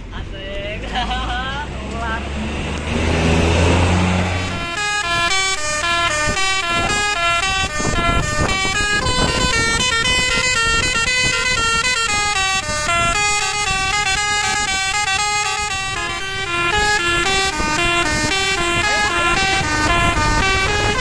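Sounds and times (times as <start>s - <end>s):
bus engine rumble: 0.0s - 21.0s
musical multi-tone bus horn: 3.0s - 21.0s.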